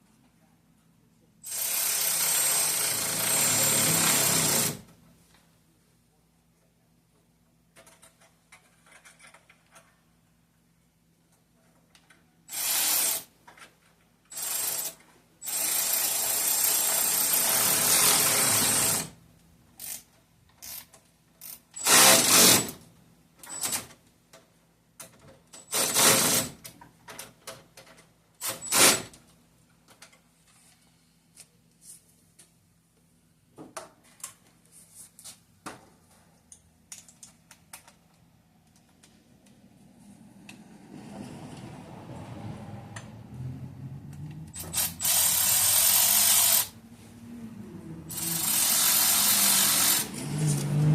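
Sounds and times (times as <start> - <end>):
clicks of tools and parts: 7.7 - 10.1, 36.4 - 39.6
cordless power tool running: 48.1 - 50.2.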